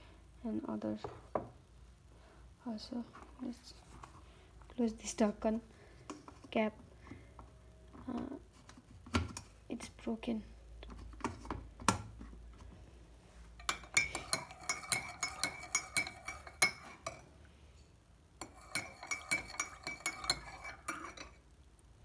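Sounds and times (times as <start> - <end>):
spoon clinking in a cup: 13.6 - 17.2, 18.4 - 21.4.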